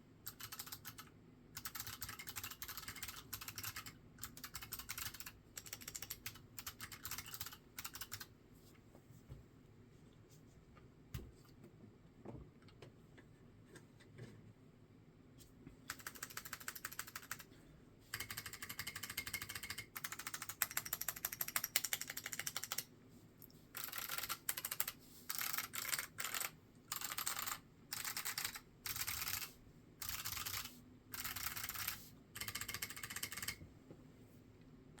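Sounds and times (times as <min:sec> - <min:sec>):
clicky keyboard typing: 0:00.3 - 0:08.3, 0:15.9 - 0:17.5, 0:18.1 - 0:22.9, 0:23.8 - 0:33.6.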